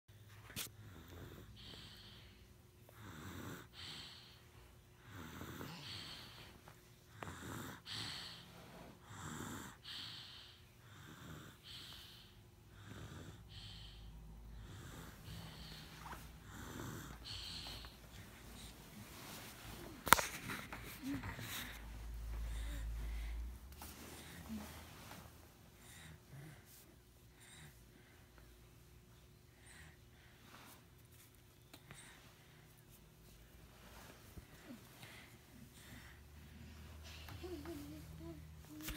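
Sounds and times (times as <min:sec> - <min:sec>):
pet snoring: 0:03.0 - 0:04.2, 0:05.0 - 0:06.2, 0:07.2 - 0:08.4, 0:09.0 - 0:12.0, 0:12.7 - 0:13.8, 0:14.5 - 0:18.7.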